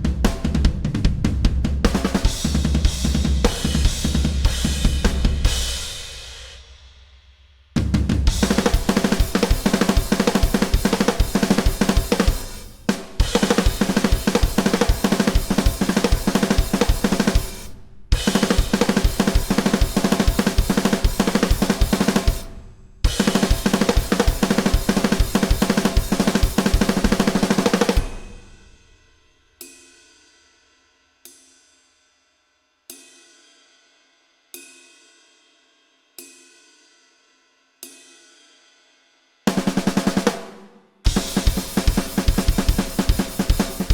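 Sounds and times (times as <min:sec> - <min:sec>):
drum kit played fast: 0:00.0 - 0:06.8, 0:07.8 - 0:28.8, 0:39.5 - 0:43.9
accented drum hits ringing out: 0:07.8 - 0:28.8, 0:39.5 - 0:43.9.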